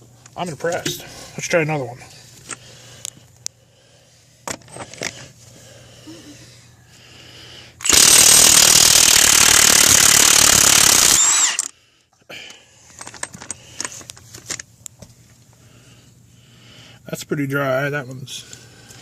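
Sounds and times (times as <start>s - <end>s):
impact wrench hammering: 7.8s - 11.7s.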